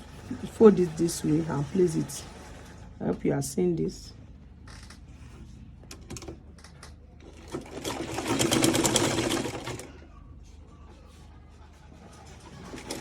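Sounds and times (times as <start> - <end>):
sewing machine stitching: 0.0 - 3.0, 7.2 - 10.0, 12.0 - 13.0.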